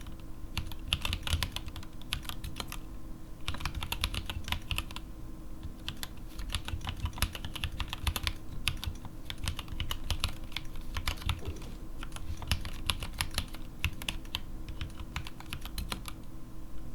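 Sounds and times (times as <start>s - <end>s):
mechanical keyboard typing: 0.0s - 2.8s, 3.4s - 5.0s, 5.6s - 16.2s.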